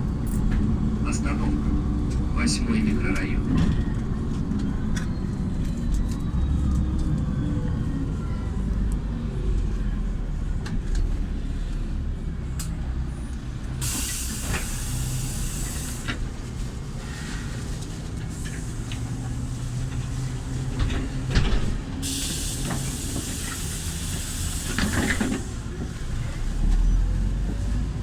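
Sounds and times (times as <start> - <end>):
bus engine rumbling: 0.0 - 28.0
air brake hiss: 13.8 - 16.2, 22.0 - 25.6.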